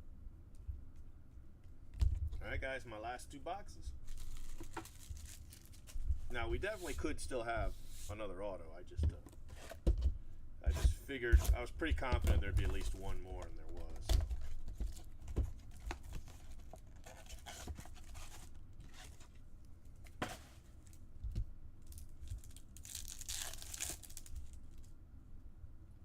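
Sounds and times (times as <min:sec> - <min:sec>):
paper and foil tearing: 0:04.0 - 0:07.0, 0:15.8 - 0:19.3, 0:22.4 - 0:24.6.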